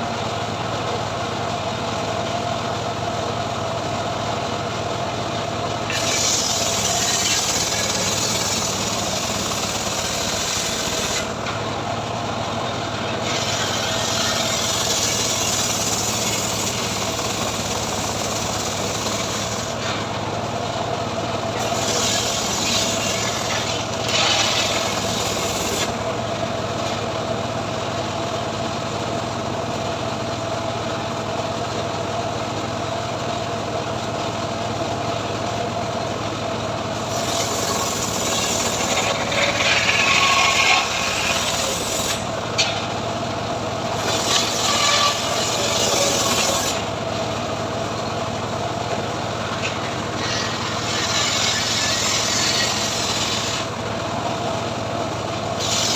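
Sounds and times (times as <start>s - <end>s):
sawmill engine hum: 0.0s - 55.9s
saw blade cutting log: 5.8s - 27.2s, 37.0s - 55.9s.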